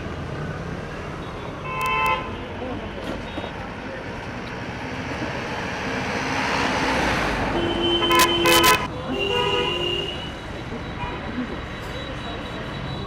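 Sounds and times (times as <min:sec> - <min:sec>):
car horns honking: 0:01.6 - 0:02.5, 0:07.4 - 0:10.4.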